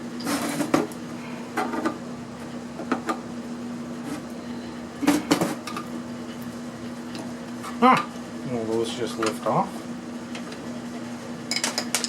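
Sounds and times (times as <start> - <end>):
steady low hum: 0.8 - 11.6.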